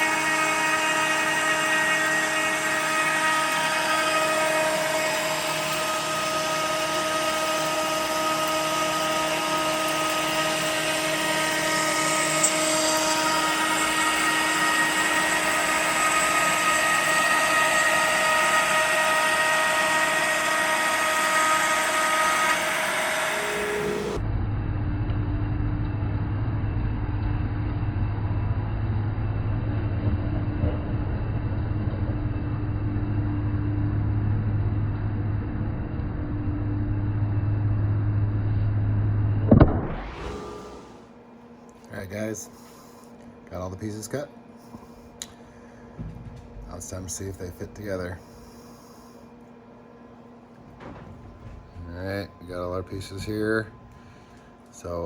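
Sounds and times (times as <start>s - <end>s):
router spindle whining: 0.0s - 24.2s, 39.7s - 41.2s, 43.9s - 55.0s
steady low hum: 0.0s - 55.0s.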